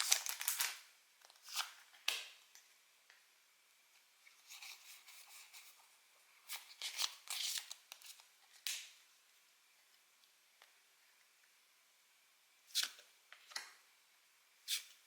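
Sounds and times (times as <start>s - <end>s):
cards and packaging rustling: 0.0s - 2.3s, 6.5s - 8.8s.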